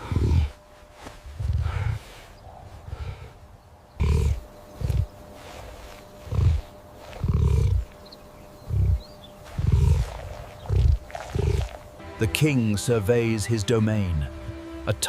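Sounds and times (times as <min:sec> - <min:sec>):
lion roaring: 0:00.0 - 0:00.6, 0:04.0 - 0:05.2, 0:06.2 - 0:08.0, 0:08.6 - 0:11.9.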